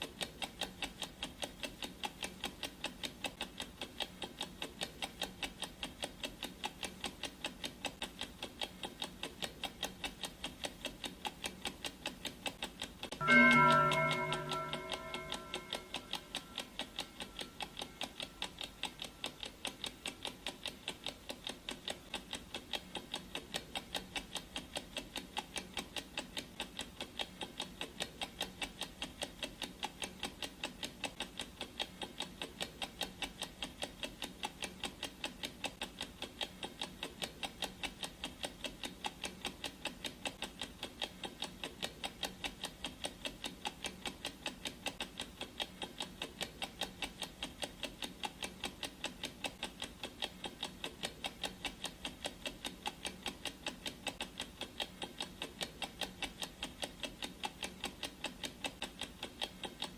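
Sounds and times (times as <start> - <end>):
clock ticking: 0.0 - 59.9
gong ringing: 13.2 - 16.6.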